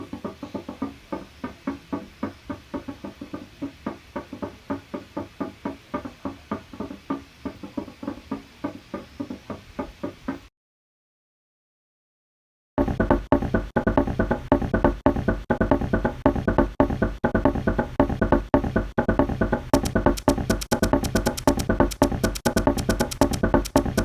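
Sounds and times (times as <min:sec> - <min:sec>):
air conditioner knocking: 0:12.8 - 0:24.0.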